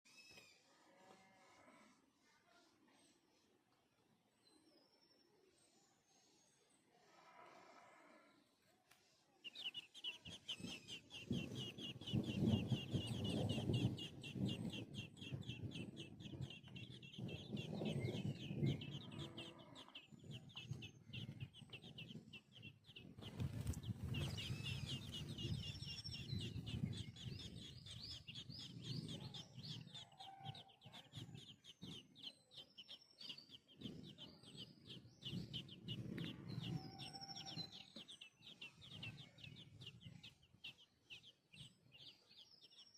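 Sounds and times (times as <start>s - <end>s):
bird low clucking calls: 9.5s - 40.8s.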